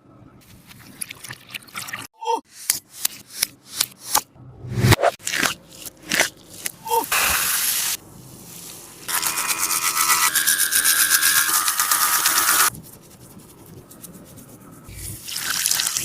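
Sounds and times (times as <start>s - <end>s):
steady rasping noise: 9.1s - 14.9s.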